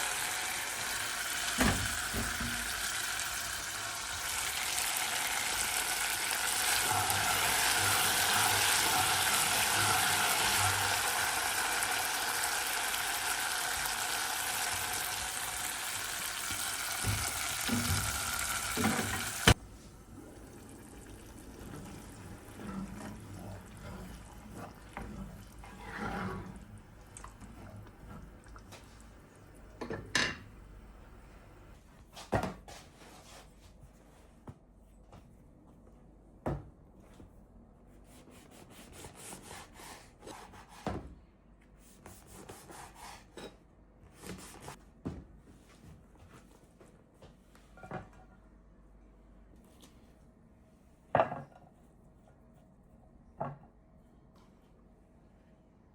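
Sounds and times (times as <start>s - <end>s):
steady kitchen hiss: 0.0s - 31.9s.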